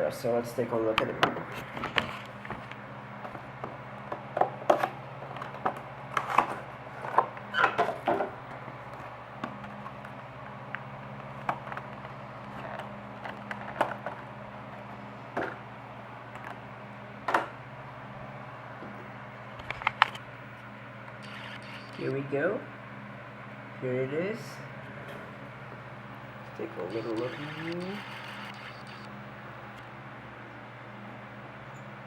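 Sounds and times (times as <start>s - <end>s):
plastic packaging handled: 1.4s - 15.7s.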